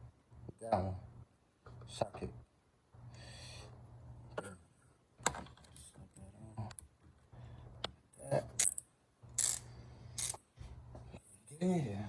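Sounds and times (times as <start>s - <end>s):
socket wrench clicking: 8.6s - 8.8s, 9.4s - 9.6s, 10.2s - 10.4s.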